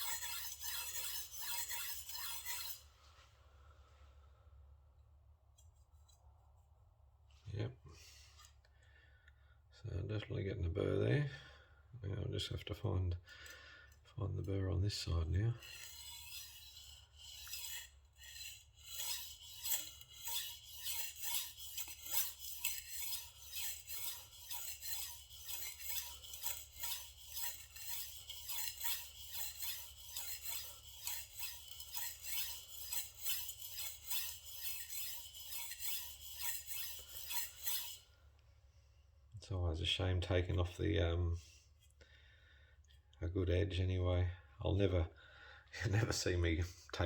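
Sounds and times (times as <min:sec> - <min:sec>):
knife scraping on sharpening stone: 0:00.0 - 0:02.8, 0:15.6 - 0:38.0.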